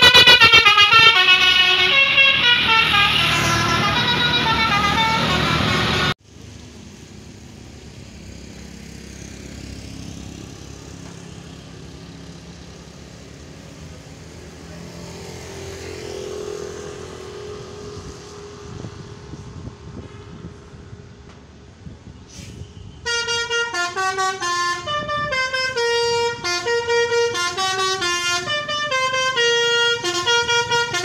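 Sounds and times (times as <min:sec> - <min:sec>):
road traffic passing: 0:00.0 - 0:31.0.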